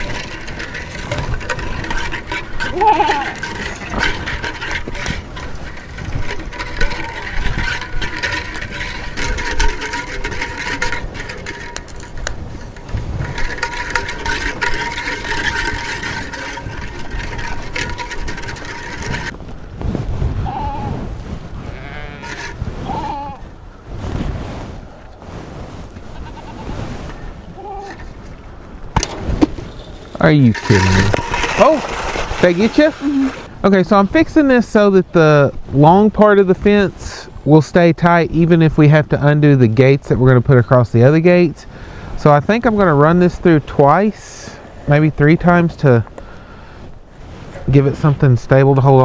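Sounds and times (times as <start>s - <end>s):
goats bleating: 21.7s - 23.4s.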